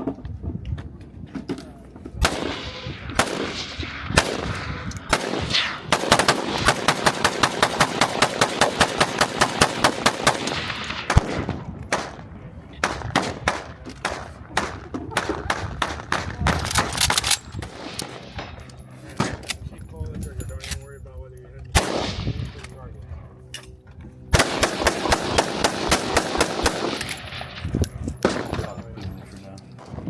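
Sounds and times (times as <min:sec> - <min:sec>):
gunshots: 0:02.2 - 0:12.2, 0:12.8 - 0:18.6, 0:21.8 - 0:22.4, 0:24.3 - 0:28.8.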